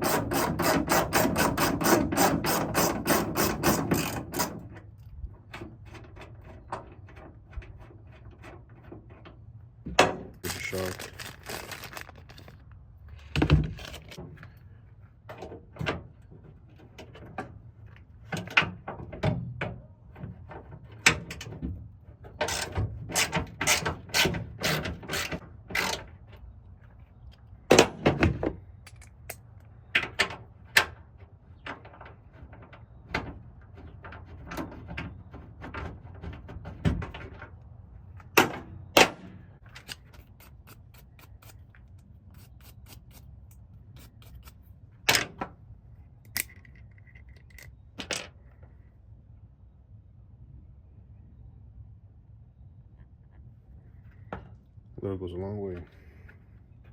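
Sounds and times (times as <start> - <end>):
tools and parts clicking and clanking: 0.0 - 9.4, 10.0 - 16.1, 22.2 - 37.6, 39.6 - 45.6, 46.2 - 48.7.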